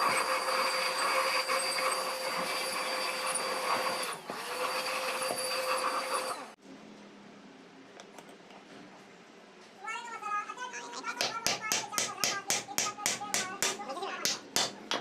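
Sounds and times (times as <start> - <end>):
power tool motor whining: 0.0 - 6.6.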